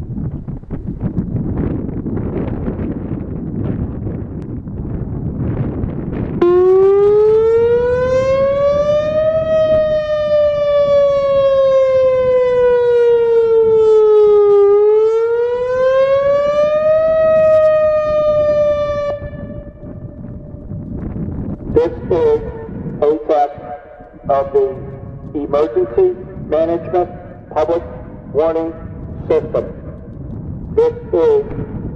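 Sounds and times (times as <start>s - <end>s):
warning siren wailing: 6.4s - 31.9s.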